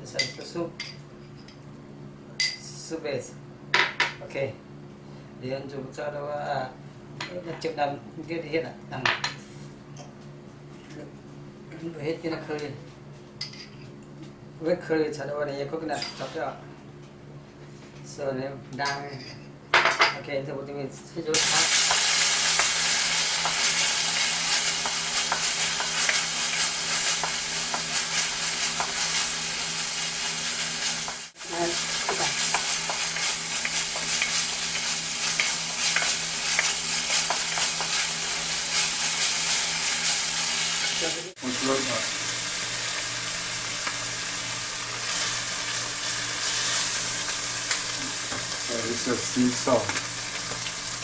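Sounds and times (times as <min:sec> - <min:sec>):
food sizzling in a pan: 0:21.4 - 0:51.0.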